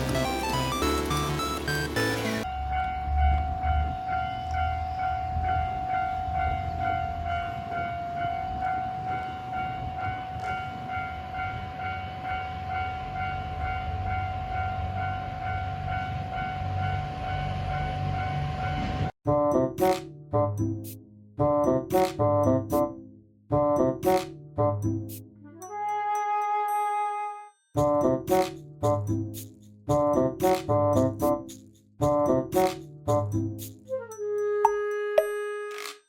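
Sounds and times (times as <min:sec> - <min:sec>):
level-crossing warning bell ringing: 0:02.2 - 0:19.1.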